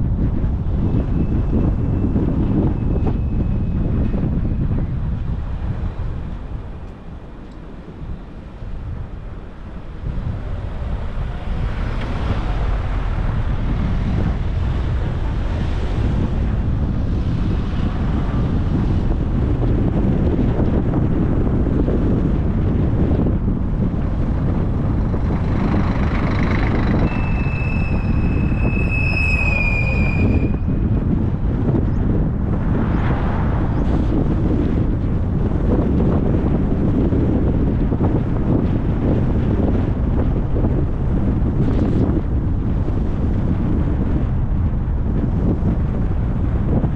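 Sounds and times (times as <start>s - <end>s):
car road noise rumble: 0.0s - 46.9s
wind buffeting microphone: 0.0s - 46.9s
high steady squeal: 0.7s - 19.4s, 24.6s - 32.0s.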